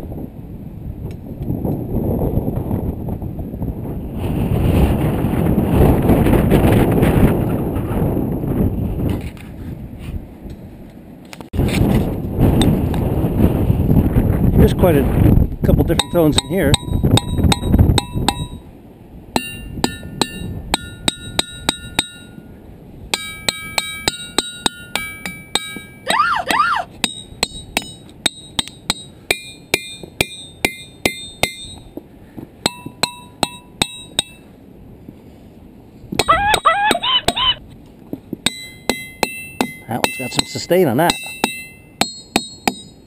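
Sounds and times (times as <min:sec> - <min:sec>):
hammer striking ringing rocks: 0:15.9 - 0:18.7, 0:19.4 - 0:22.5, 0:23.1 - 0:32.0, 0:32.6 - 0:34.5, 0:36.1 - 0:37.4, 0:38.4 - 0:43.0.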